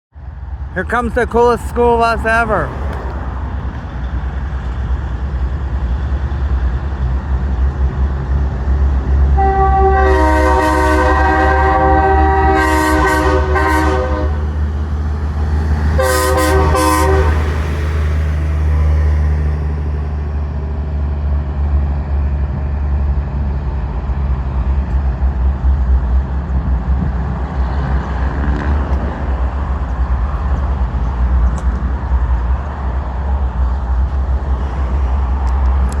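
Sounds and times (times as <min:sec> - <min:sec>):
train horn chord blasts: 0:09.4 - 0:14.5, 0:16.0 - 0:17.6.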